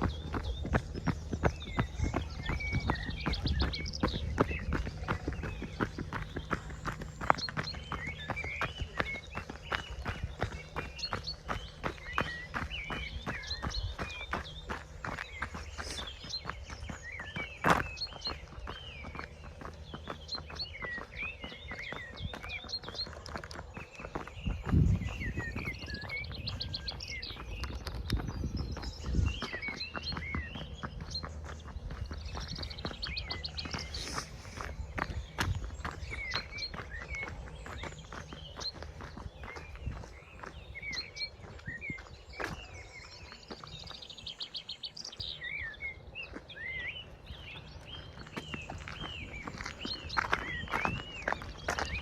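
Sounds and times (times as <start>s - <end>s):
birds chirping: 0.0s - 52.0s
clicks and footsteps: 0.0s - 52.0s.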